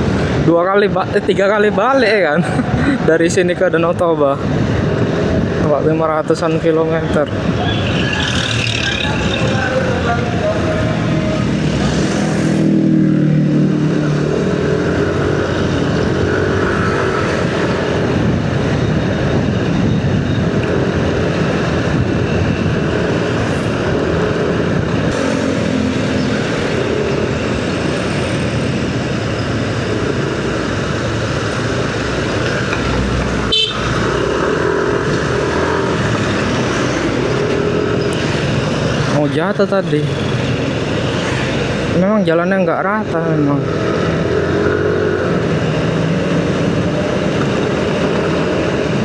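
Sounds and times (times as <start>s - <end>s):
vehicles passing: 0.0s - 49.0s
wind and road noise: 0.0s - 49.0s
motorcycle engine: 22.9s - 39.0s.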